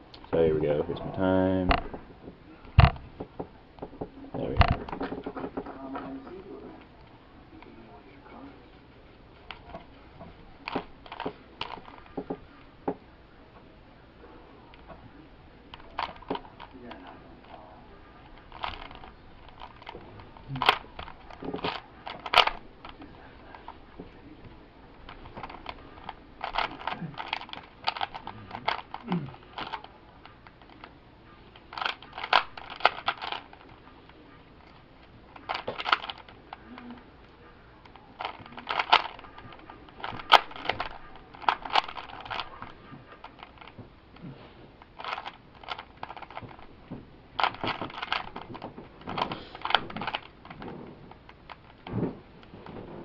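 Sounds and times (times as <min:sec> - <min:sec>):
puzzle cube plastic clicking: 0:10.6 - 0:12.3, 0:15.7 - 0:17.6, 0:18.2 - 0:52.6.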